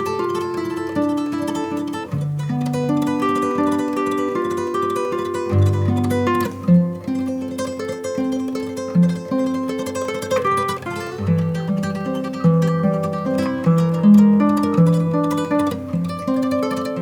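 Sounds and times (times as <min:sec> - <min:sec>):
plucked guitar melody: 0:00.0 - 0:17.0.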